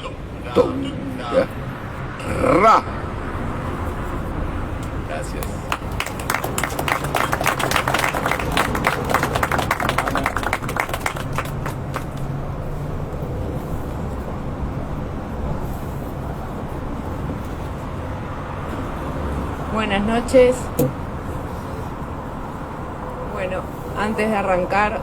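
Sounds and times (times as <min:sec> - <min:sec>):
audience applauding: 0:05.4 - 0:12.4.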